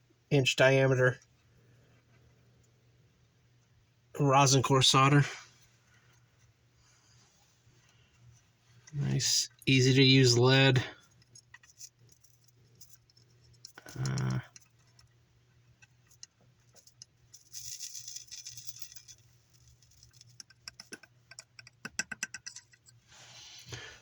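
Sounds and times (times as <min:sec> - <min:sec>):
small objects clicking and rattling: 0:11.0 - 0:15.2, 0:15.8 - 0:23.0.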